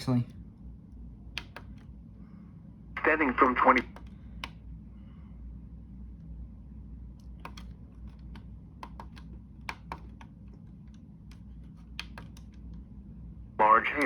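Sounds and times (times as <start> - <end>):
low steady hum: 0.0 - 14.0
keys clicking: 7.2 - 12.8.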